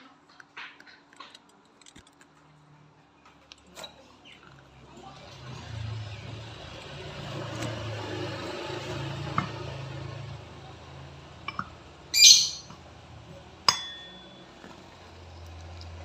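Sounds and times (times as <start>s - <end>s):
shrill high-pitched sound: 12.1s - 12.7s.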